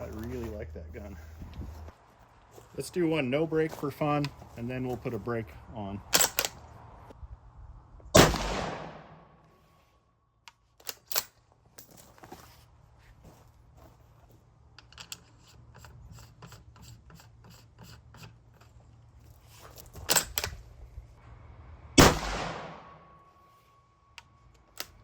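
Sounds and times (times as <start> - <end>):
rifle handling clicks and rattles: 6.2 - 6.6, 10.5 - 12.3, 14.7 - 16.9, 18.2 - 20.6, 24.2 - 25.0
loud rifle shot with echo: 8.2 - 9.4, 22.0 - 23.1.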